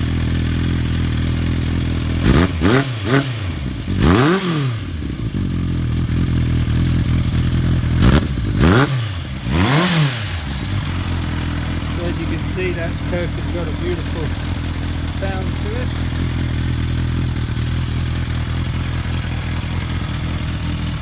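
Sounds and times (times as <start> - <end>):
motorcycle engine idling and revving: 0.0 - 21.0.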